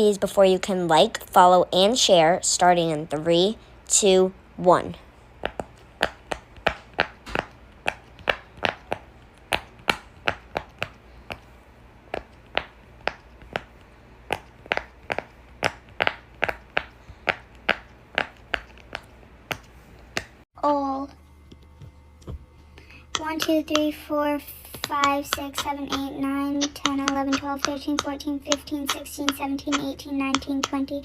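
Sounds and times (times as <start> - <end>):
fidget toy bubbles popping: 5.4 - 11.5, 24.7 - 31.0.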